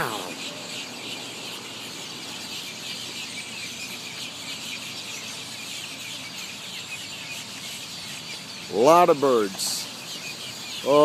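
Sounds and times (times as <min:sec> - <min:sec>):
flock of birds chirping: 0:00.0 - 0:11.0.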